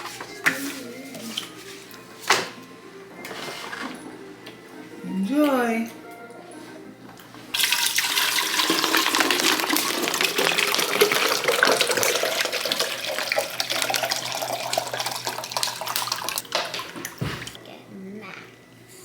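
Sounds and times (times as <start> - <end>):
tap water filling a vessel: 7.6 - 17.6.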